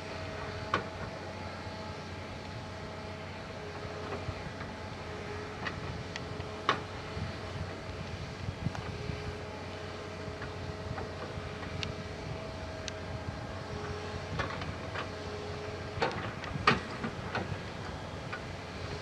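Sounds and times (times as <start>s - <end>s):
excavator diesel engine running: 0.0s - 19.0s.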